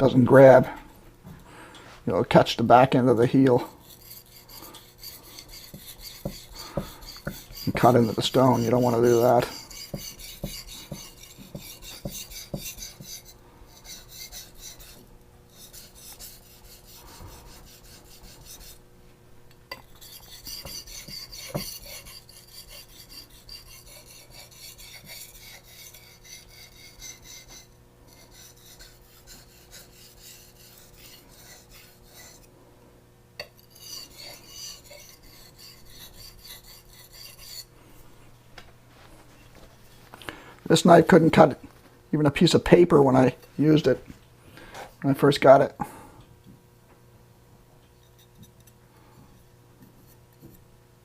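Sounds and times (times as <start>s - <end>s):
knife rasping on whetstone: 3.7s - 18.8s, 19.7s - 32.5s, 33.4s - 37.7s.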